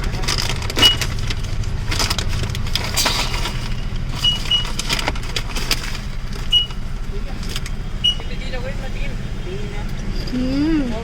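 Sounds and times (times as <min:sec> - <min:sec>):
potato chips crunching: 0:00.0 - 0:07.8
low steady rumble: 0:00.0 - 0:11.0.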